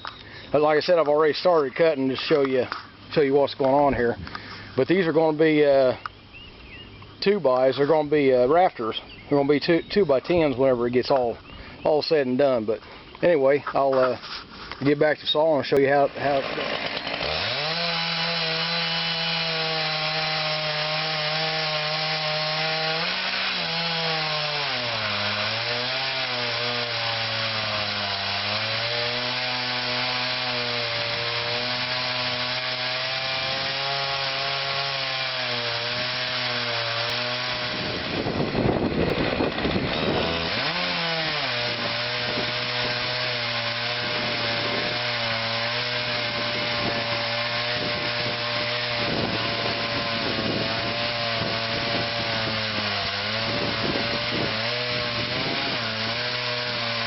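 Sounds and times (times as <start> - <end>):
chainsaw cutting a log: 14.1 - 57.0.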